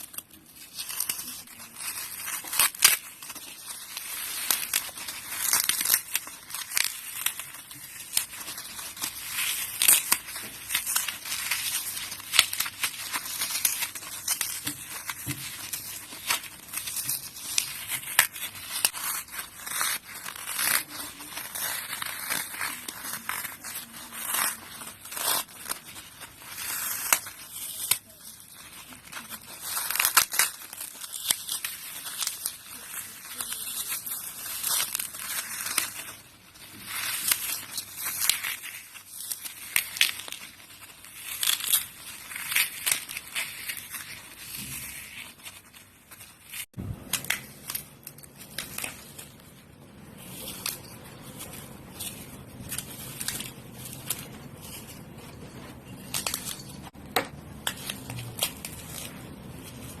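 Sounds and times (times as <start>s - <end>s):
floral foam crunching and crackling: 0.0s - 60.0s.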